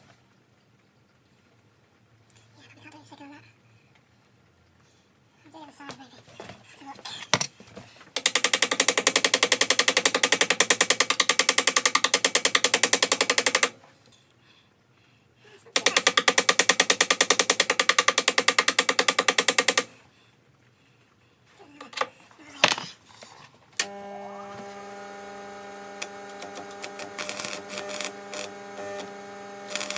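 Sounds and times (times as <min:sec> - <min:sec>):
electric welding arc buzzing: 0:23.8 - 0:29.9.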